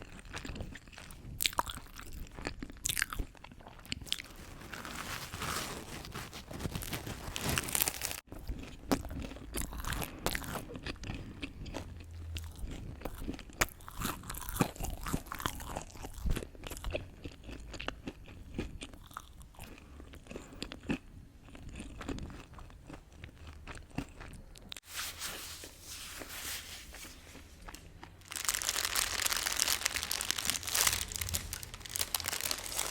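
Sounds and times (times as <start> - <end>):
crunchy chewing: 0.0 - 24.8, 27.3 - 32.9
crackling crunches: 1.4 - 10.1, 27.1 - 32.9.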